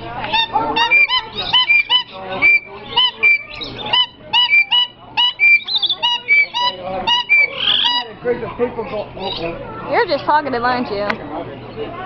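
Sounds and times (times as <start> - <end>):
parrot honking calls: 0.3 - 8.2.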